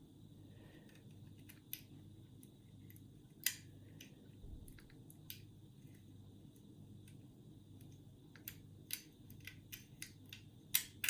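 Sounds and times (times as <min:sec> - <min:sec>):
metallic lock picking clicks: 0:07.8 - 0:11.0.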